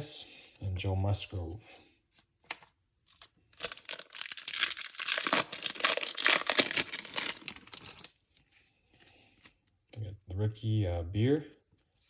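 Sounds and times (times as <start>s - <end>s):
foil wrapper crinkling and tearing: 3.6s - 8.1s.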